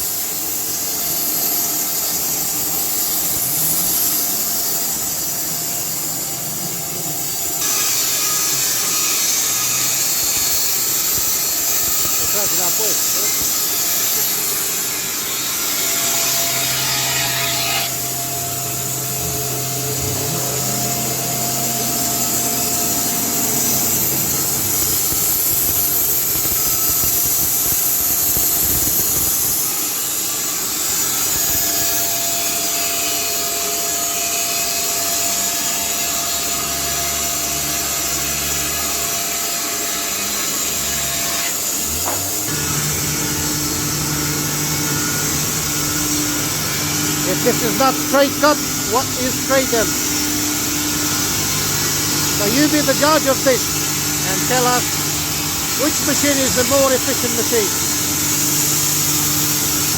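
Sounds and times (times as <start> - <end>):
band saw blade hissing through log: 0.0 - 42.8, 43.4 - 59.9
motor hum: 18.0 - 26.2, 41.9 - 59.9.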